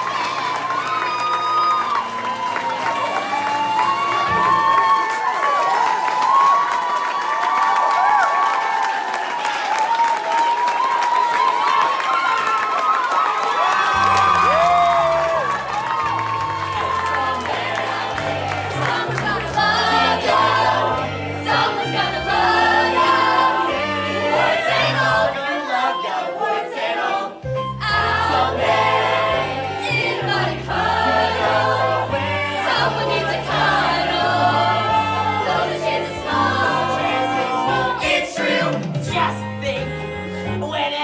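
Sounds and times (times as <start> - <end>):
musical accompaniment: 0.0 - 6.4, 13.8 - 41.0
group of voices singing: 16.4 - 41.0.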